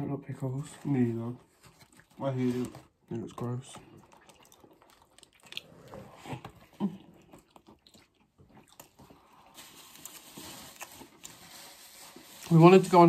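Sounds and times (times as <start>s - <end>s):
biting and chewing food: 1.4s - 11.8s.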